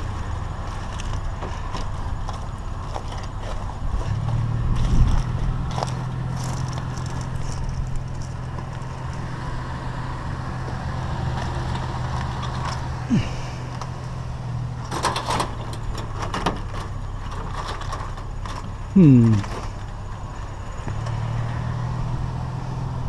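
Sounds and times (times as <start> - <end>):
vehicle engine humming: 0.0 - 23.0
clicks and rattles: 14.8 - 20.0.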